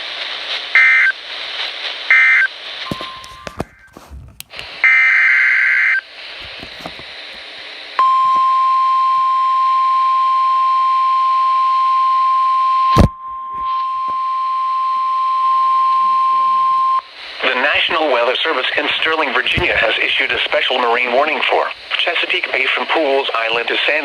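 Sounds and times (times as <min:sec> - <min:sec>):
static crack: 0:00.0 - 0:08.0, 0:17.0 - 0:24.0.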